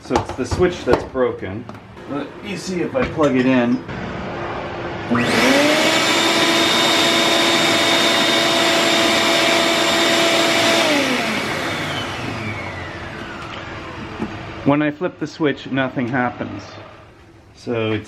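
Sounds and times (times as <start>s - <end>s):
shop vacuum motor whining: 3.8s - 14.8s.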